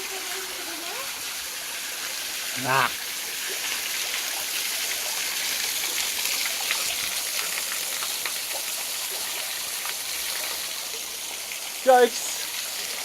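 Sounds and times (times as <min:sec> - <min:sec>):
small waterfall splashing: 0:00.0 - 0:13.0.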